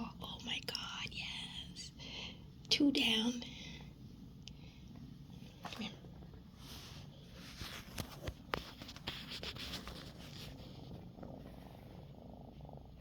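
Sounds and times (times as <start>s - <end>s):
cat purring: 2.9s - 13.0s
rustling from handling: 6.7s - 10.9s.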